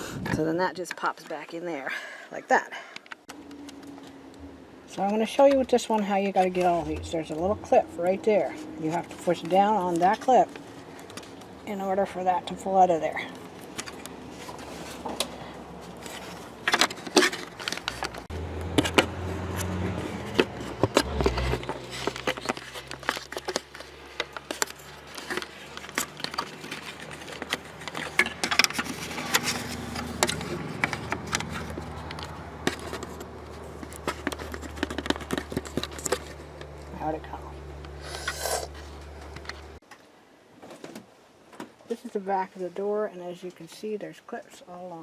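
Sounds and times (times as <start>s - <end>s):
low steady hum: 2.8s - 40.3s
plastic trim clicking and scraping: 15.9s - 36.7s.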